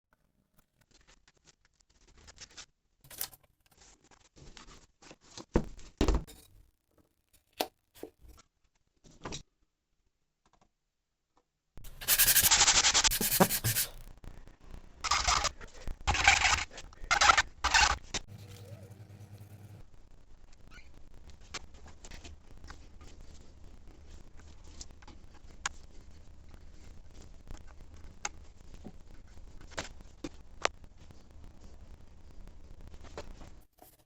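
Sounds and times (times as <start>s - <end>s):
rubbing on paper and board: 11.9s - 14.0s.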